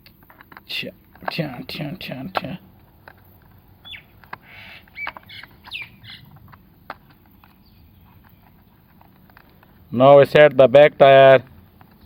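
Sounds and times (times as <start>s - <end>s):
short high squeaks: 3.8s - 6.4s.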